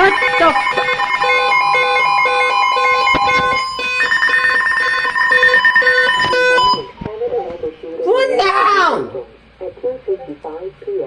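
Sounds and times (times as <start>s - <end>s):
low pulsing alert beep: 0.0s - 7.0s
steady higher alert tone: 0.0s - 7.0s
rapidly pulsing high tone: 0.0s - 9.3s.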